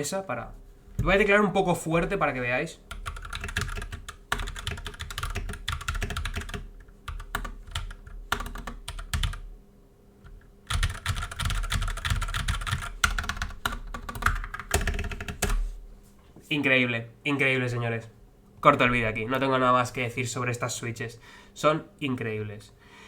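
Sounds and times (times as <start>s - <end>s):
mechanical keyboard typing: 2.9s - 9.5s, 10.7s - 15.6s.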